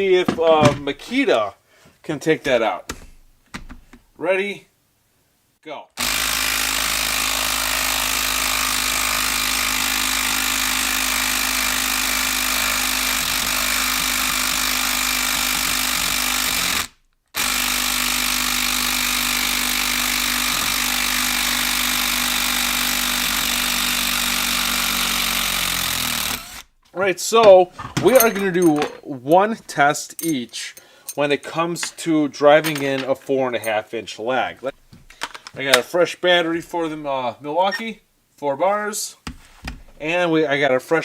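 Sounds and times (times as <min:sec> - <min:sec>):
impact driver hammering: 0:06.0 - 0:26.6.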